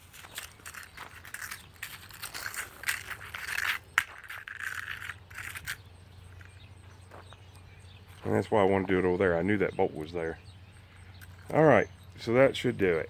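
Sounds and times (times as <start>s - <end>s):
screws and nails clinking: 0.0s - 5.8s
scraping: 0.0s - 6.6s.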